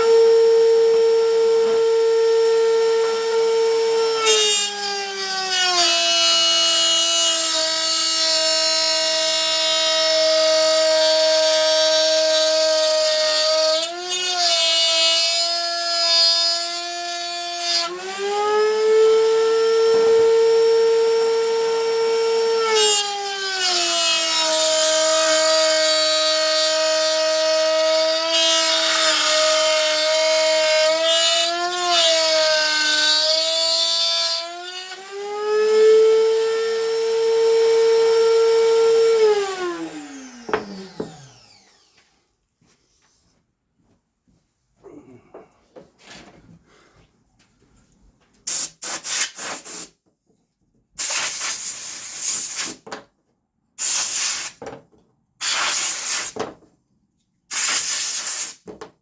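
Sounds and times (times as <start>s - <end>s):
router motor whining: 0.0s - 42.2s.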